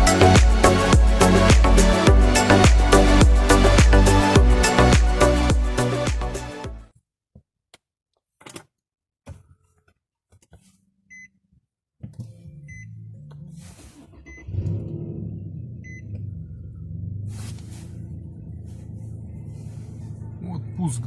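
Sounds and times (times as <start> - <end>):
car engine starting and rumbling: 14.0 - 21.0.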